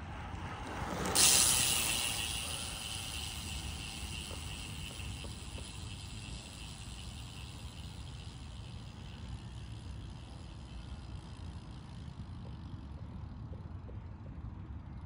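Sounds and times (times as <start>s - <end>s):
faint hiss: 1.1s - 10.1s.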